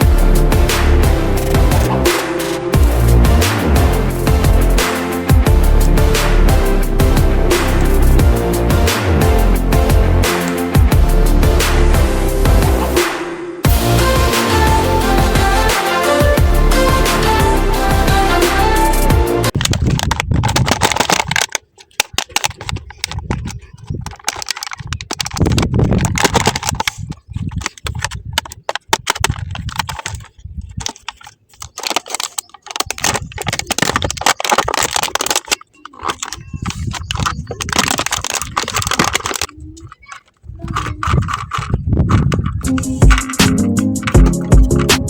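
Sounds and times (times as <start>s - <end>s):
small parts clicking and scraping: 19.5s - 45.0s.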